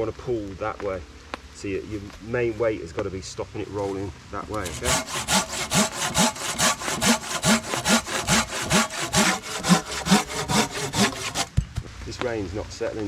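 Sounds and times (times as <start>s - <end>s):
hand saw cutting wood: 4.6s - 11.5s.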